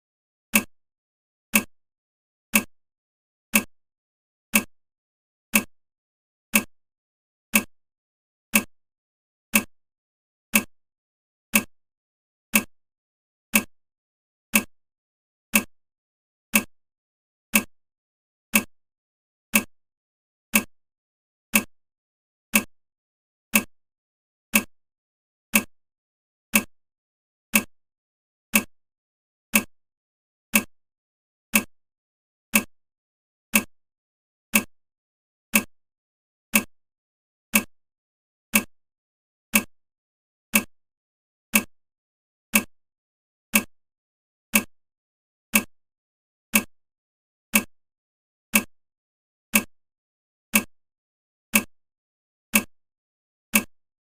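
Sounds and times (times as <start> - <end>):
timer ticking: 0.5 - 0.7, 1.5 - 1.7, 2.5 - 2.7, 3.5 - 3.7, 4.5 - 4.7, 5.5 - 5.7, 6.5 - 6.7, 7.5 - 7.7, 8.5 - 8.7, 9.5 - 9.7, 10.5 - 10.7, 11.5 - 11.7, 12.5 - 12.7, 13.5 - 13.7, 14.5 - 14.7, 15.5 - 15.7, 16.5 - 16.7, 17.5 - 17.7, 18.5 - 18.7, 19.5 - 19.7, 20.5 - 20.7, 21.5 - 21.7, 22.5 - 22.7, 23.5 - 23.7, 24.5 - 24.7, 25.5 - 25.7, 26.5 - 26.7, 27.5 - 27.7, 28.5 - 28.7, 29.5 - 29.7, 30.5 - 30.7, 31.5 - 31.7, 32.5 - 32.7, 33.5 - 33.7, 34.5 - 34.7, 35.5 - 35.7, 36.5 - 36.7, 37.5 - 37.7, 38.5 - 38.7, 39.5 - 39.7, 40.5 - 40.7, 41.5 - 41.7, 42.5 - 42.7, 43.5 - 43.7, 44.5 - 44.7, 45.5 - 45.7, 46.5 - 46.7, 47.5 - 47.7, 48.5 - 48.7, 49.5 - 49.7, 50.5 - 50.7, 51.5 - 51.7, 52.5 - 52.7, 53.5 - 53.7.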